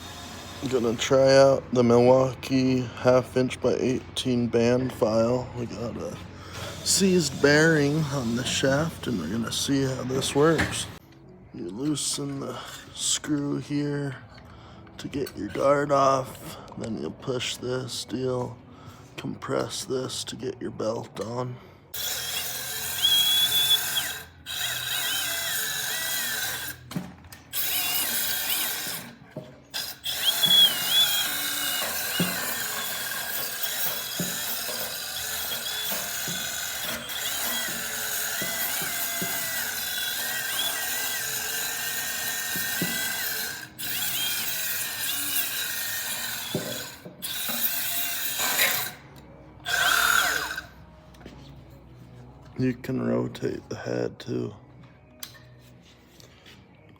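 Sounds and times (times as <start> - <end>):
band file grinding on steel: 0.0 - 1.6, 5.8 - 11.0, 21.9 - 50.8.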